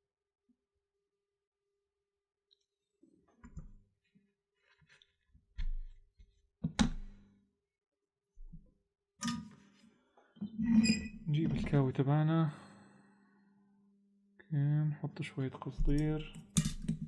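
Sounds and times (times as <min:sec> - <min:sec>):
tools clicking and knocking: 0:15.8 - 0:17.0.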